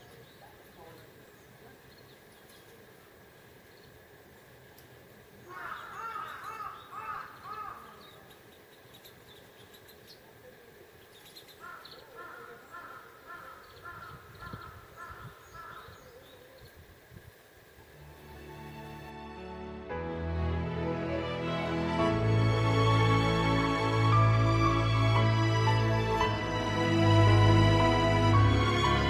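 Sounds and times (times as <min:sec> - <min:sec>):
bird calling repeated notes: 0:05.5 - 0:08.3.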